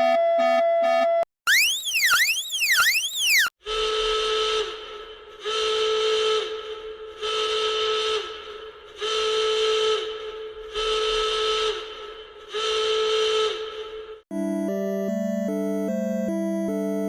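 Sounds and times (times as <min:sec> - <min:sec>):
alarm whistle blasts: 0:00.0 - 0:04.7.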